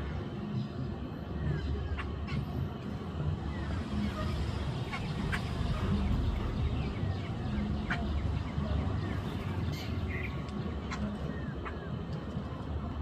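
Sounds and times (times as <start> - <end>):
birds chirping and squeaking: 0.0 - 13.0
steady low rumble: 0.0 - 13.0.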